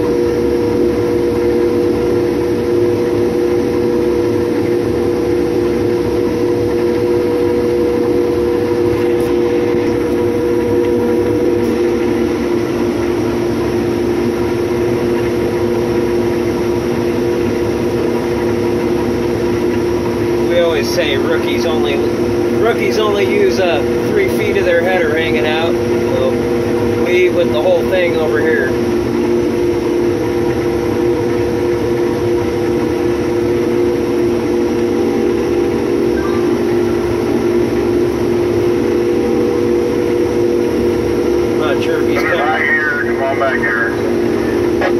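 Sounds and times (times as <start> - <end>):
combine harvester drone: 0.0 - 44.9.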